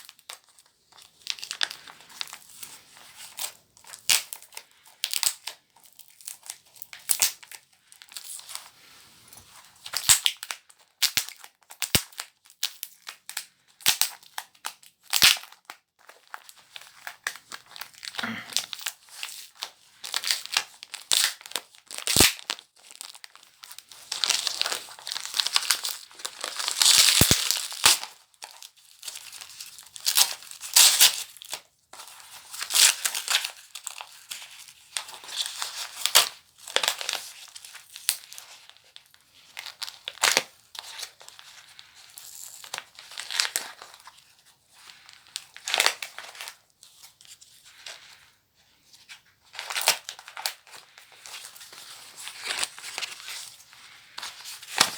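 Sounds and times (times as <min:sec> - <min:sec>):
paper packaging tearing and rustling: 0:13.8 - 0:38.8, 0:39.4 - 0:44.2, 0:49.0 - 0:54.9.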